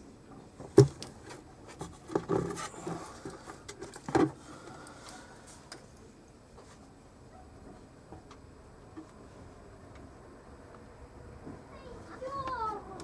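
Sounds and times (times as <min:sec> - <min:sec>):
light scraping and rustling: 0:00.6 - 0:07.0.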